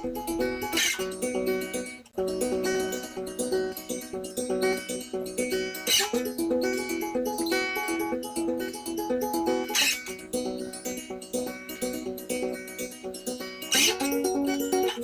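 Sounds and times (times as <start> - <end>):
plucked guitar: 0.0 - 15.0.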